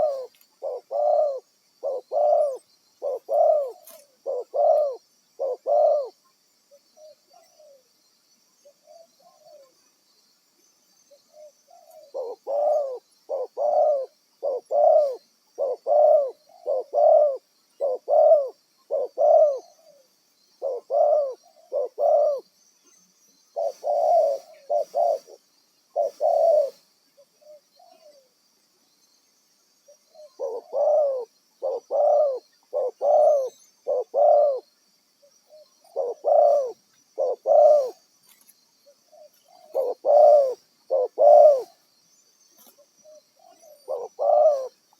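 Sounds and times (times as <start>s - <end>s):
dove cooing: 0.0s - 7.9s, 11.3s - 22.5s, 23.5s - 28.3s, 29.9s - 38.0s, 38.9s - 41.8s, 42.6s - 44.9s.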